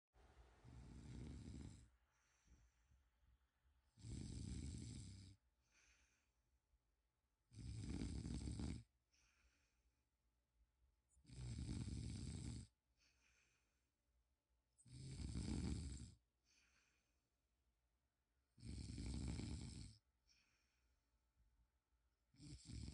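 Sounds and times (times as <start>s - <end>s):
soft breathing: 0.5s - 3.1s, 4.9s - 6.5s, 9.1s - 10.0s, 12.9s - 13.9s, 16.4s - 17.2s, 20.2s - 21.0s
person snoring: 0.6s - 1.9s, 4.0s - 5.4s, 7.5s - 8.9s, 11.2s - 12.7s, 14.8s - 16.2s, 18.6s - 20.0s, 22.4s - 22.9s.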